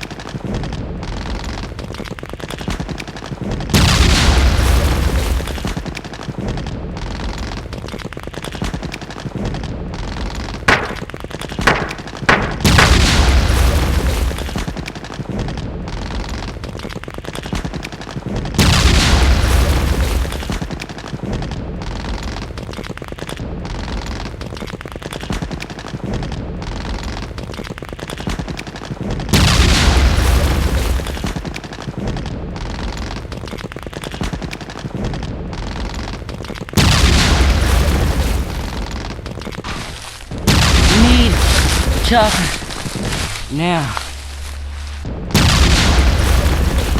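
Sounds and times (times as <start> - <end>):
continuous gunfire: 0.0 - 46.9
sharp cracks: 0.0 - 46.9
heavy booms: 2.6 - 16.9, 29.1 - 33.5, 34.2 - 46.9.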